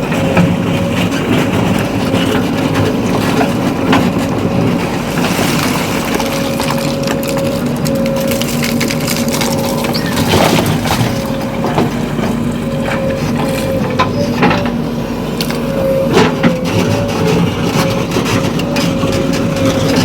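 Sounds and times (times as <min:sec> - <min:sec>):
crunching knocks and clatter: 0:00.0 - 0:14.8
diesel engine running under load: 0:00.0 - 0:20.0.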